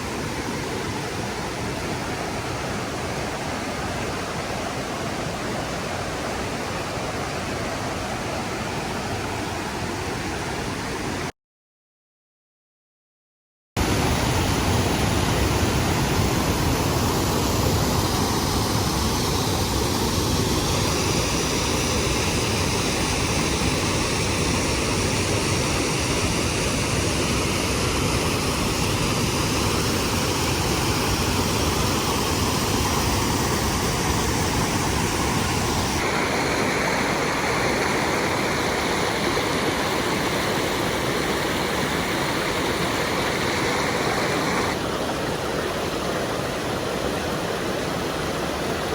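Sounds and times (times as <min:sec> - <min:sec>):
creek water rushing: 0:00.0 - 0:11.3, 0:13.8 - 0:48.9.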